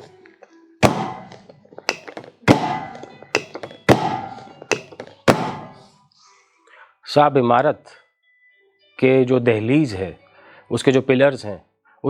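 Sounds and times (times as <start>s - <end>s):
heavy rhythmic thuds: 0.8s - 5.9s.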